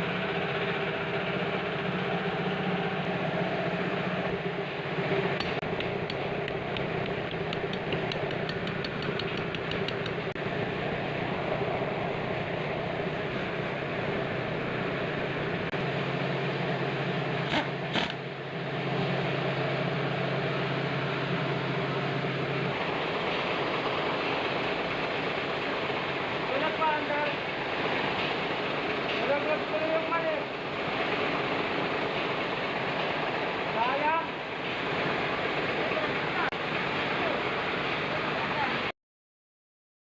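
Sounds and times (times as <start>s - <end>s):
car engine idling: 0.0s - 34.2s
sharp knocks: 5.4s - 10.4s.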